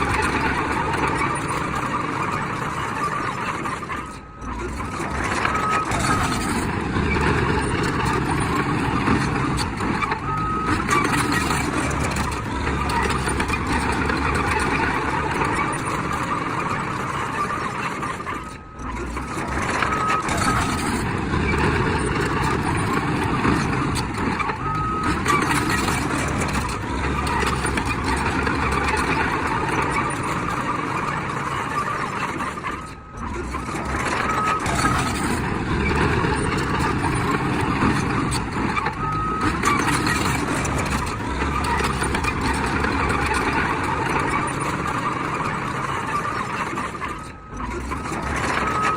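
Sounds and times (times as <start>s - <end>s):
bulldozer engine running: 0.0s - 48.9s
reversing alarm beeps: 3.2s - 14.0s, 17.5s - 28.9s, 31.6s - 43.0s, 46.2s - 48.9s.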